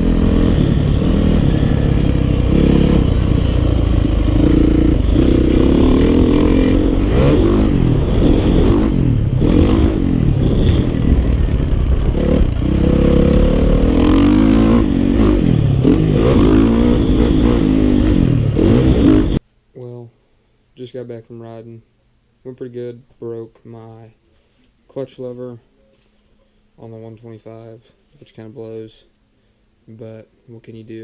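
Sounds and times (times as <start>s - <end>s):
dirt bike engine revving: 0.0s - 19.4s.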